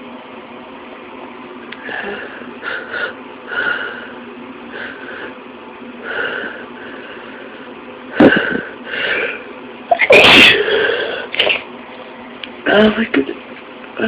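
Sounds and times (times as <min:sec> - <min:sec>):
person sneezing: 0:09.9 - 0:11.6.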